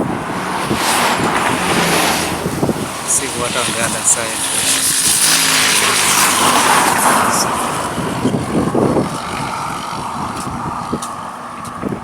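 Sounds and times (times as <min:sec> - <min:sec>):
car passing at speed: 0:00.0 - 0:12.0
wind rumble on microphone: 0:00.0 - 0:12.0.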